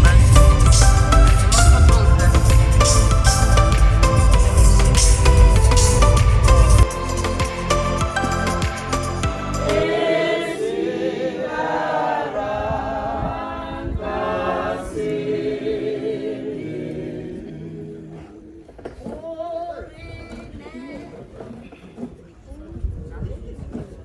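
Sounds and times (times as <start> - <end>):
music track with steady beat: 0.0 - 9.9
group singing unaccompanied: 0.0 - 18.8.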